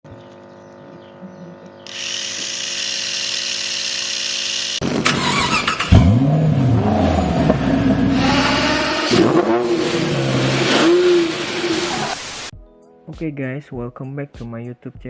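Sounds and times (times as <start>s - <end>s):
engine revving: 4.3s - 12.4s.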